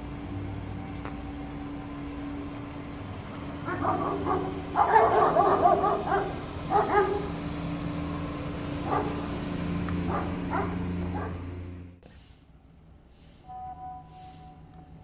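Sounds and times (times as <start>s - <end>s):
dog barking: 3.6s - 7.3s, 8.8s - 9.2s, 10.1s - 11.4s.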